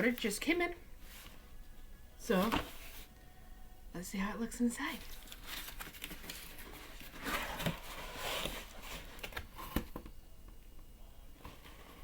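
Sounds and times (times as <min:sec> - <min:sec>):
cardboard package rustling: 0:05.0 - 0:10.0.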